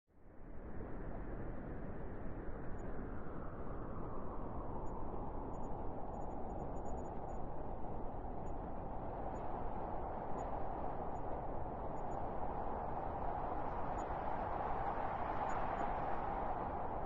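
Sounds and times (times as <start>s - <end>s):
soft hiss of wind: 0.2s - 17.0s.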